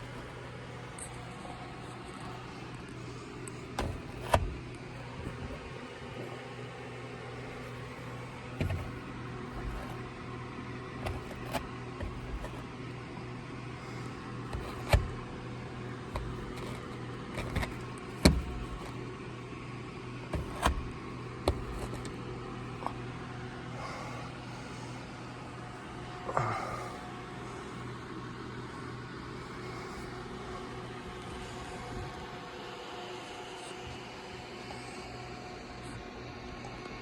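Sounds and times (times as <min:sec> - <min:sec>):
steady low hum: 0:00.0 - 0:37.0
irregular clicks and knocks: 0:03.5 - 0:05.7, 0:08.6 - 0:10.2, 0:11.0 - 0:12.6, 0:14.5 - 0:15.3, 0:16.1 - 0:19.0, 0:20.3 - 0:22.2.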